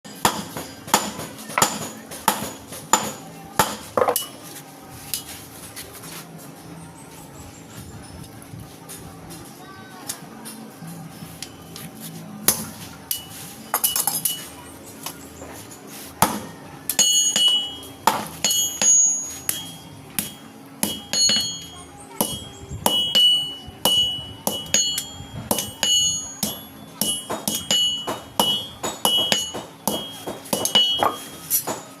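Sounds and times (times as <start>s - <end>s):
hammer striking steel on anvil: 0.1s - 4.4s, 12.5s - 14.6s, 16.2s - 32.0s.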